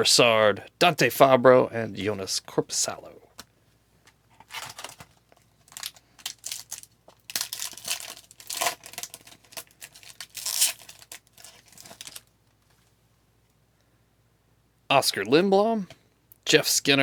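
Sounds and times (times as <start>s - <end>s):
wrapper tearing and crinkling: 4.4s - 12.3s.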